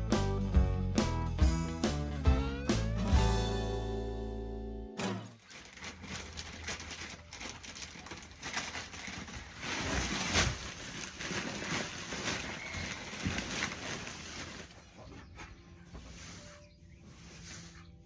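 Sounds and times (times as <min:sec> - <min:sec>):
wood shavings rustling and scraping: 0:05.4 - 0:18.0.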